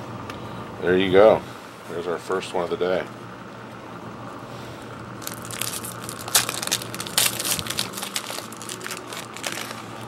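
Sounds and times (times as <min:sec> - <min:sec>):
foil wrapper tearing and crinkling: 0:05.2 - 0:10.0.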